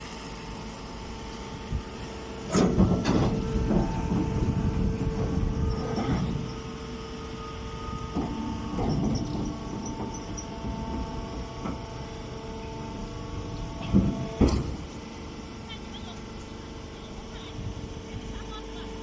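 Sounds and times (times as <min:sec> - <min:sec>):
motor and pump hum: 0:00.0 - 0:19.0
loud metal clanks: 0:02.5 - 0:04.6, 0:13.8 - 0:15.0.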